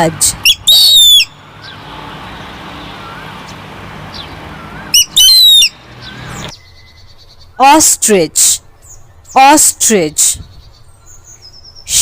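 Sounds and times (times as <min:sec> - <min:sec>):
falcon calling: 0:00.4 - 0:01.4, 0:04.5 - 0:05.8.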